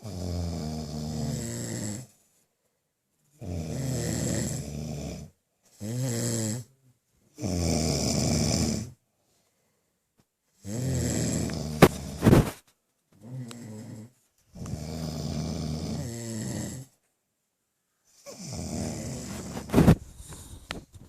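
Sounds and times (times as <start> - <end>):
man snoring: 0.0 - 2.1, 3.4 - 6.8, 7.4 - 9.0, 10.6 - 12.5, 13.2 - 17.0, 18.2 - 20.4.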